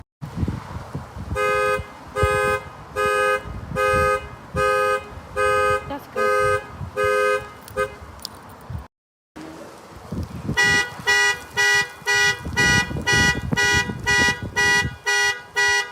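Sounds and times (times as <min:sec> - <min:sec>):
car alarm honking: 0:01.4 - 0:08.0, 0:10.6 - 0:15.9.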